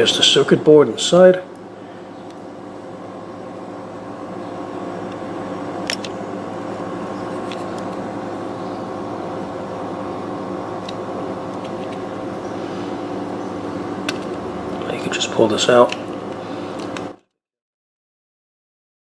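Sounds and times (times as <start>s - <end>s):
machine humming: 0.0s - 17.2s.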